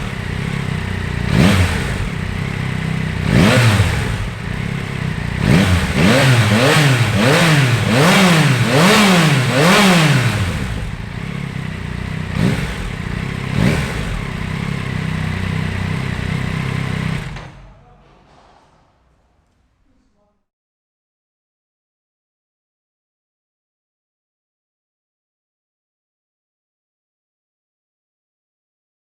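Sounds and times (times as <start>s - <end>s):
motorcycle engine revving: 0.0s - 17.8s.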